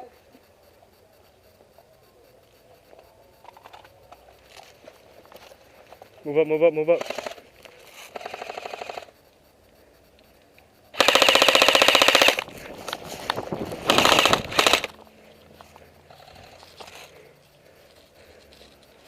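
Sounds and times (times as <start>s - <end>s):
airsoft rifle bursts: 6.8s - 7.5s, 8.1s - 9.2s, 10.9s - 15.0s.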